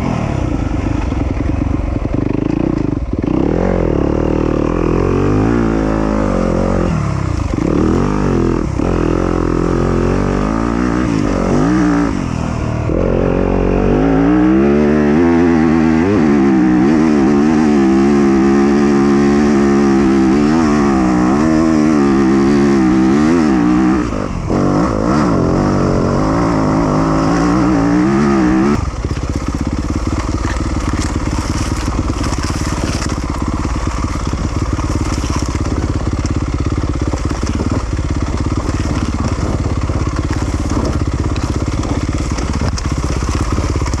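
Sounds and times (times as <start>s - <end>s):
dirt bike engine revving: 0.0s - 44.0s.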